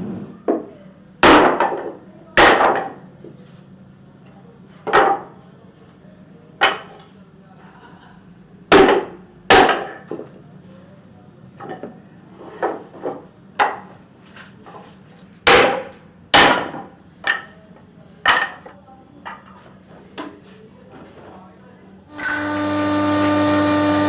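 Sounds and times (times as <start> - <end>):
hammer striking wood: 1.2 - 1.8, 8.7 - 10.2, 15.5 - 17.4.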